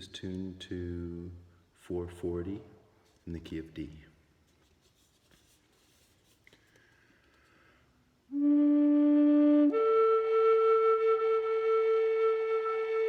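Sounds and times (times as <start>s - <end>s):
low wooden flute notes: 8.3s - 13.0s.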